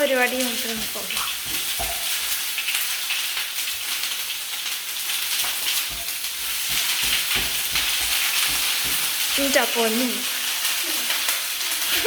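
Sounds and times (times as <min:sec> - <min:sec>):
garlic paste sizzling in oil: 0:00.0 - 0:12.0.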